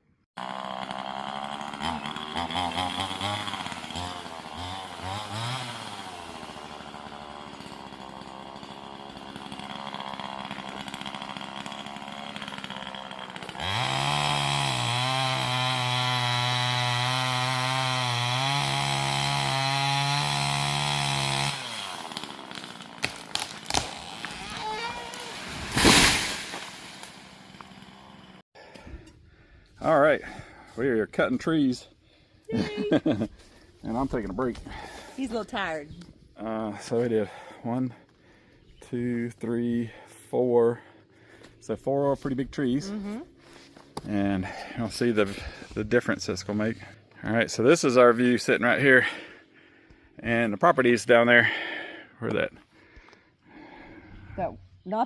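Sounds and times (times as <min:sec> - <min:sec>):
chainsaw engine revving: 0:00.4 - 0:28.8, 0:32.5 - 0:35.6, 0:37.2 - 0:37.6.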